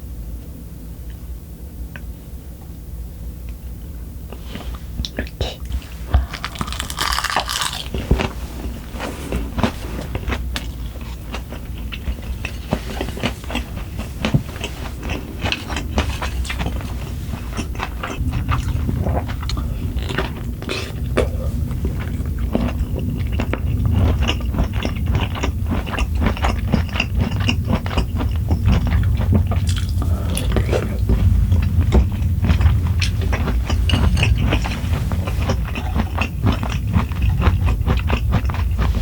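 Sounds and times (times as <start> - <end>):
wet chewing: 4.5 - 39.0
crunchy bites: 6.2 - 8.4.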